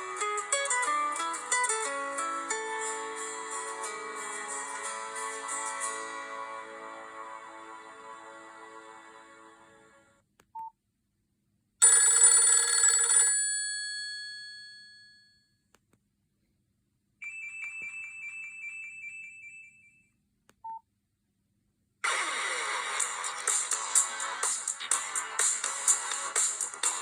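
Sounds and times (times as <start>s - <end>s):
music ringtone: 0.0s - 6.6s, 17.2s - 20.1s
bell-like chime: 17.2s - 20.1s.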